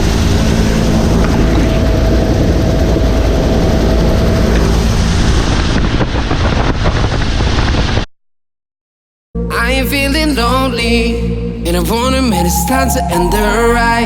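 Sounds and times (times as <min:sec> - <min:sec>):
helicopter engine and rotor noise: 0:00.0 - 0:05.8.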